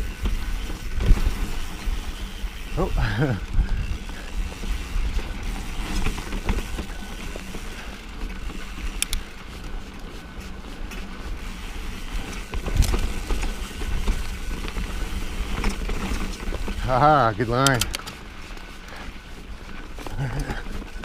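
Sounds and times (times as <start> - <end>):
bike rattling: 0.0 - 21.0
bike tyres rumbling on dirt trail: 0.0 - 21.0
wind on microphone: 2.9 - 5.3
bike knocks and clicks: 17.5 - 18.2.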